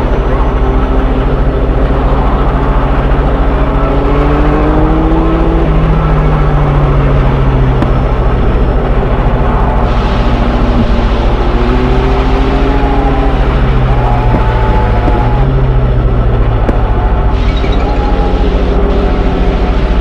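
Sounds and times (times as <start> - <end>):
train engine throbbing: 0.0 - 20.0.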